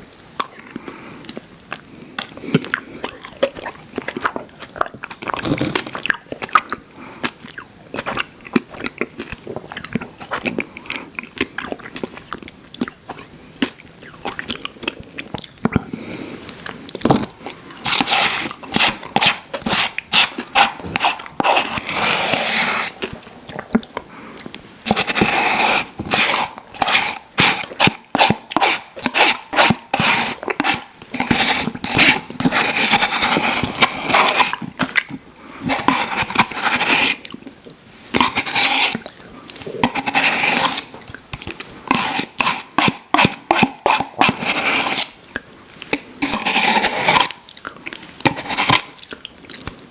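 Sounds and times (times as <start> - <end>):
wet smacking and chewing: 0.2 - 25.2, 25.9 - 35.3, 37.1 - 40.0, 47.1 - 49.9.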